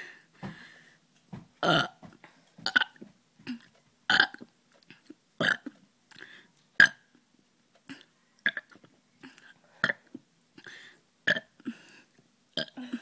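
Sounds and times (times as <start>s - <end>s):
girl burping: 1.6s - 2.0s, 12.6s - 13.0s.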